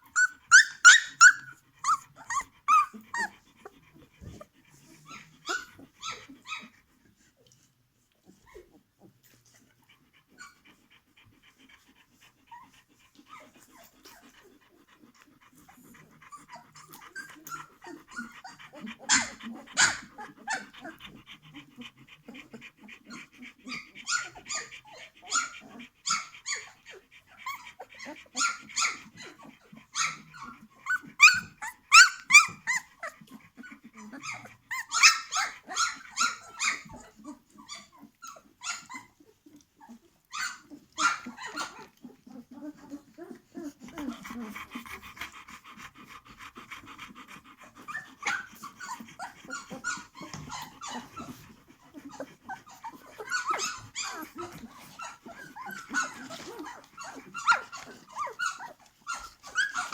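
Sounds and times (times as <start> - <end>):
puppies squeaking and whining: 0.0 - 6.8, 15.5 - 59.9.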